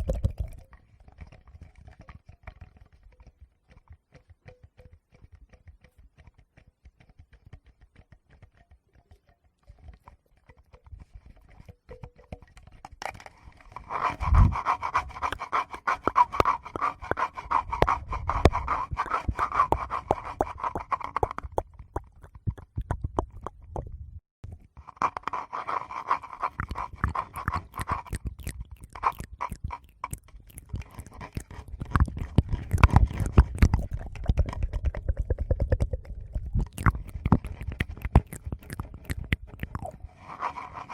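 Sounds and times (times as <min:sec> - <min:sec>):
crackling and clicking on microphone: 0:00.0 - 0:40.9
mouth sounds: 0:13.9 - 0:24.1, 0:26.0 - 0:40.9.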